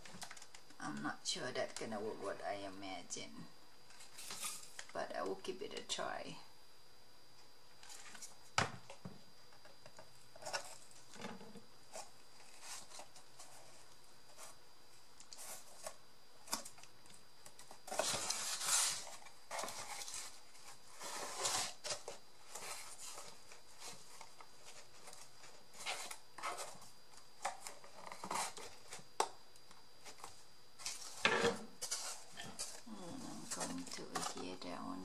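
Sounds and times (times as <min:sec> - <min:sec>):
cardboard rustling and scraping: 0:07.8 - 0:14.6, 0:15.2 - 0:29.2, 0:30.0 - 0:35.0.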